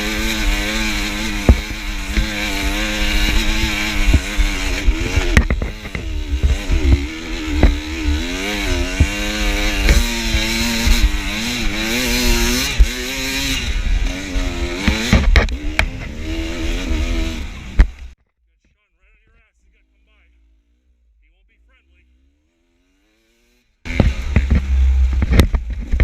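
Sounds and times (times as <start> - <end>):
dirt bike engine revving: 0.0 - 18.2, 19.4 - 26.0
knocks and clatter from bike: 0.1 - 16.5, 23.9 - 26.0.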